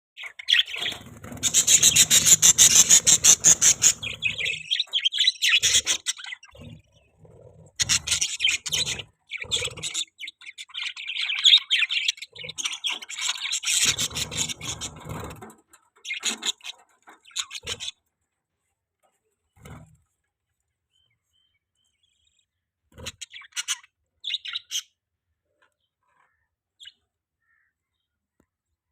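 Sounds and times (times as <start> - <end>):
budgerigars chirping: 0.2 - 7.1, 7.8 - 15.4, 23.0 - 24.9.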